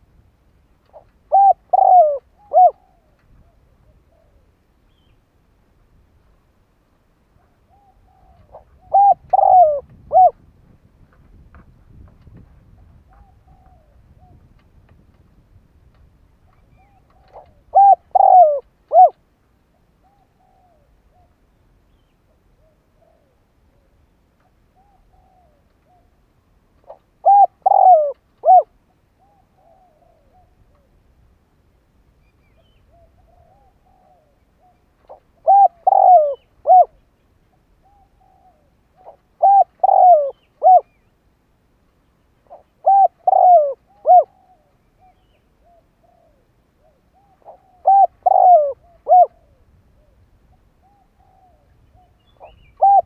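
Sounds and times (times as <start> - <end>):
dove cooing: 0.8 - 4.6, 7.4 - 10.4, 12.8 - 14.5, 16.7 - 19.2, 20.0 - 21.4, 22.5 - 26.2, 26.8 - 31.0, 32.6 - 37.0, 37.8 - 41.0, 42.4 - 53.0
faint dove coos: 0.8 - 5.1, 7.4 - 10.5, 12.6 - 14.7, 16.5 - 26.2, 26.8 - 31.1, 32.5 - 41.0, 42.4 - 53.0.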